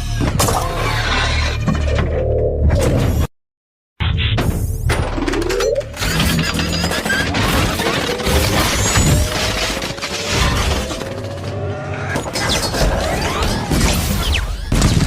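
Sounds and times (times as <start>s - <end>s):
metallic clanking and crashing: 4.8s - 11.4s
mechanical whirring: 5.3s - 14.7s.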